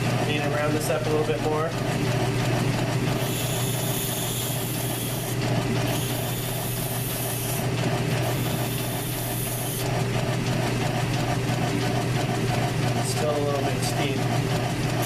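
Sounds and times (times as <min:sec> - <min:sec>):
lathe humming: 0:00.0 - 0:15.0
hissing cutting tool: 0:03.2 - 0:10.0.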